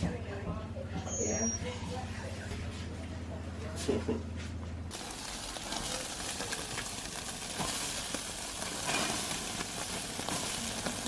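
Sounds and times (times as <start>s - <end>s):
barbecue sizzling: 4.9s - 11.0s.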